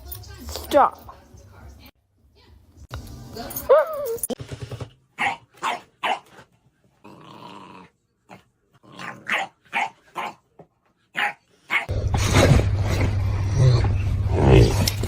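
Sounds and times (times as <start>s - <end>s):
dog barking: 5.2s - 6.3s, 9.3s - 10.4s, 11.1s - 11.9s
dog growling: 7.0s - 9.4s, 11.8s - 15.0s.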